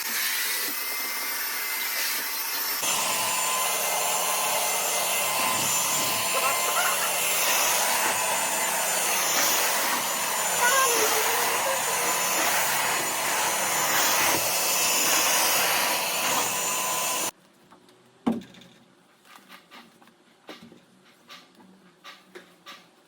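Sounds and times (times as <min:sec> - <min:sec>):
handheld vacuum cleaner running: 0:00.0 - 0:17.3.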